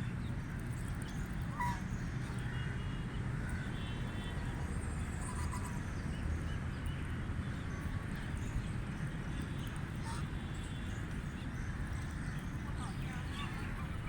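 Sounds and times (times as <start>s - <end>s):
canada goose calls: 1.5s - 1.8s, 5.2s - 5.8s.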